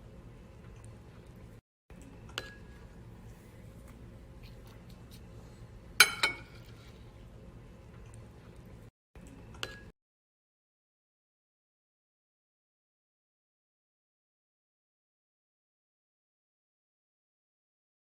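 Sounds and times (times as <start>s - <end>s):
low room hum: 0.0s - 9.9s
tableware clinking: 6.0s - 6.8s.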